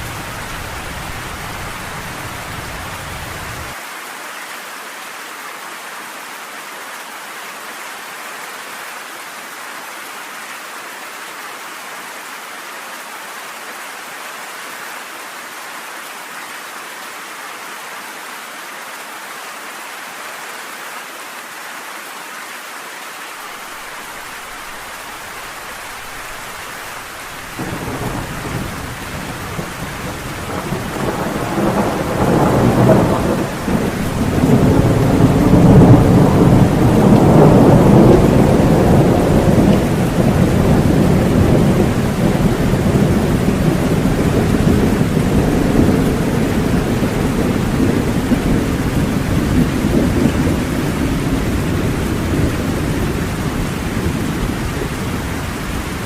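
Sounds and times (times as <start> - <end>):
rolling thunder: 0.0 - 3.8, 25.9 - 56.0
steady rain falling: 0.0 - 56.0.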